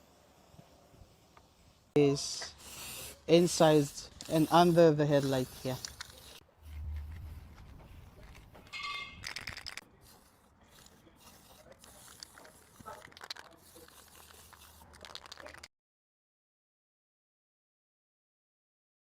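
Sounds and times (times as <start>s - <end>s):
masking tape pulled and torn: 4.1s - 8.5s, 9.2s - 15.7s.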